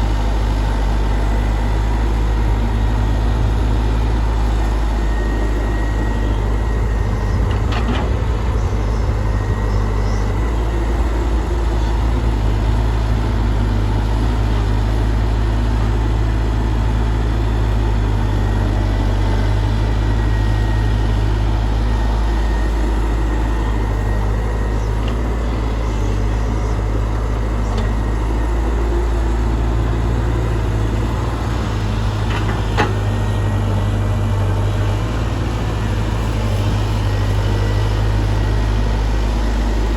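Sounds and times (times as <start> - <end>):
excavator diesel engine hum: 0.0 - 39.9.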